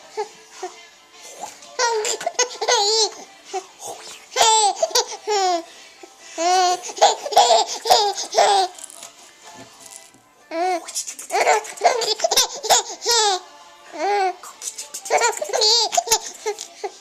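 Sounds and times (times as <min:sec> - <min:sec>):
high-pitched laughter-like squeals: 0:01.8 - 0:05.7, 0:10.6 - 0:13.4.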